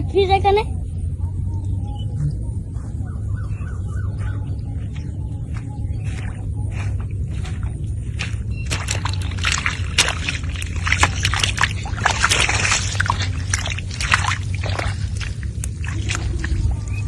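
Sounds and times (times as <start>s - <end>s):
steady low hum: 0.0s - 17.0s
water splashing and sloshing: 6.1s - 17.0s.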